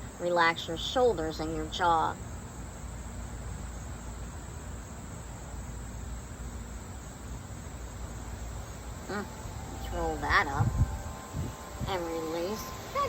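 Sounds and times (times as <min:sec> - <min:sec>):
even hiss: 0:00.0 - 0:13.0
wind rumbling on microphone: 0:07.9 - 0:13.0.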